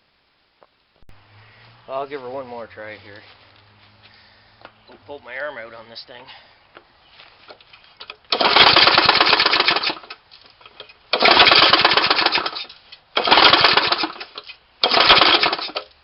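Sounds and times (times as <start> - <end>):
lawnmower engine rapid firing: 8.3 - 10.2, 11.1 - 16.0.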